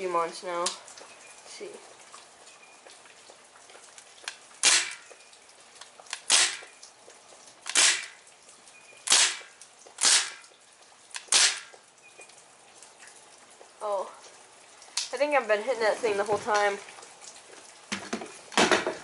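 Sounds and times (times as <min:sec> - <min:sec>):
air pistol shots: 0:10.0 - 0:10.4.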